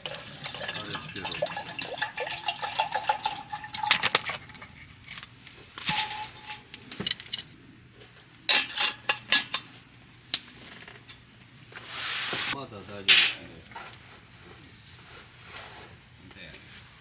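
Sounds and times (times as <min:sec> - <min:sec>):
metal cookware clinking: 0:00.0 - 0:04.8, 0:05.8 - 0:07.6, 0:08.5 - 0:09.8, 0:13.1 - 0:13.6.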